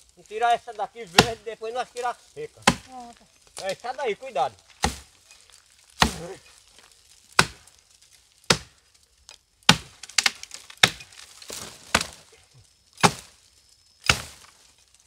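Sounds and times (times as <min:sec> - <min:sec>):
axe chopping into trunk: 0:01.2 - 0:01.4, 0:02.6 - 0:02.9, 0:04.8 - 0:05.1, 0:06.0 - 0:06.4, 0:07.4 - 0:07.6, 0:08.5 - 0:08.7, 0:09.7 - 0:12.2, 0:13.0 - 0:13.3, 0:14.0 - 0:14.4.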